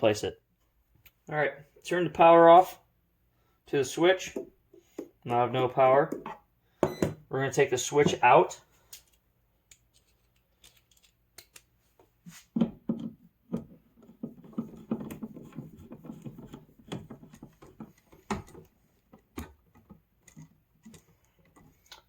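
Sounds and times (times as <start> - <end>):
screwdriver and switch rattling: 9.0 - 11.7.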